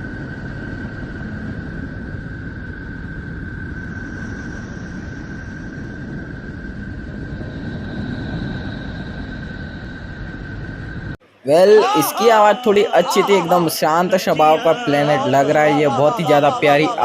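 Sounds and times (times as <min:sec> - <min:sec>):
low rumbling noise: 0:00.0 - 0:11.4
constant high tone: 0:03.7 - 0:17.0.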